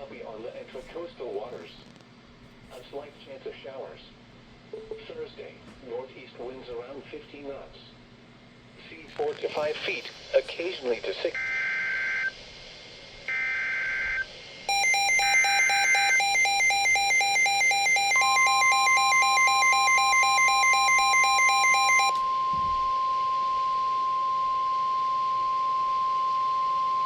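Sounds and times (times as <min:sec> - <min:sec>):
pulsing electronic alarm beep: 0:13.4 - 0:22.6
screechy digital data bursts: 0:14.7 - 0:22.1
steady alarm tone: 0:14.7 - 0:26.7.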